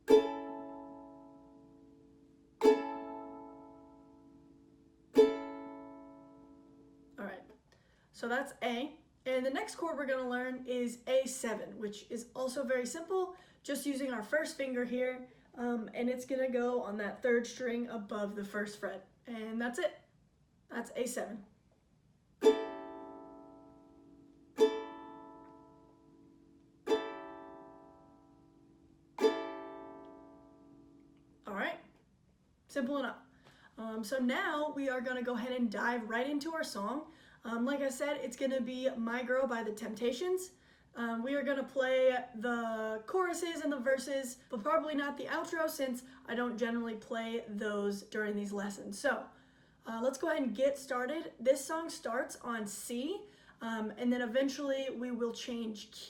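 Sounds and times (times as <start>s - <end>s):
ukulele chord strummed: 0.0s - 7.1s, 22.4s - 31.0s.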